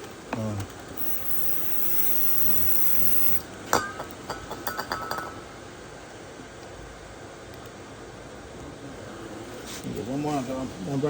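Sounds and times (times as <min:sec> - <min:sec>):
hiss: 0:01.0 - 0:03.4.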